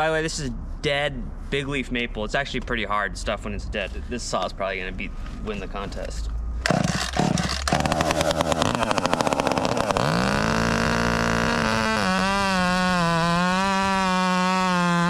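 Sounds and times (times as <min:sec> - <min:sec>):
chainsaw cutting wood: 0:06.6 - 0:15.0
chainsaw idling and revving: 0:06.6 - 0:15.0.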